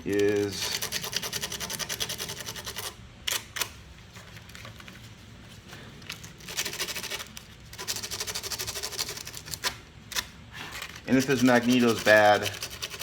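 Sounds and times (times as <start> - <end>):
sandpaper scrubbing metal: 11.1 - 13.0.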